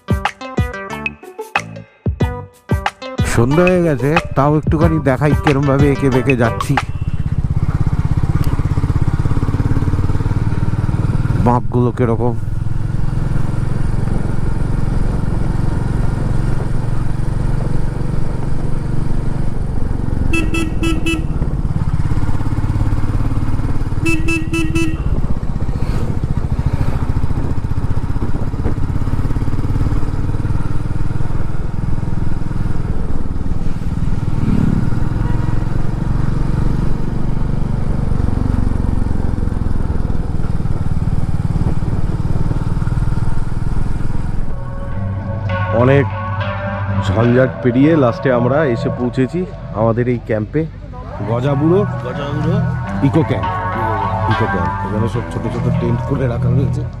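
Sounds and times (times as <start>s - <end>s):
motorcycle engine running: 3.7s - 57.0s
horn beeping: 6.0s - 7.8s, 20.2s - 25.6s, 35.0s - 36.1s, 44.4s - 57.0s
wind rumble on microphone: 25.0s - 29.2s.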